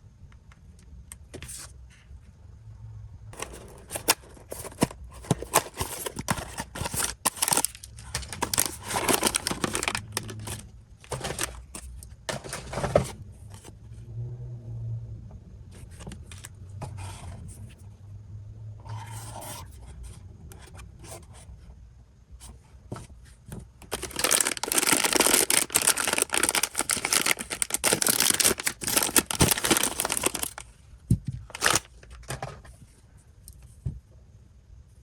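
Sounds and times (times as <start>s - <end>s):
packaging crinkling and rustling: 3.4s - 13.2s, 23.8s - 30.7s, 31.4s - 32.4s.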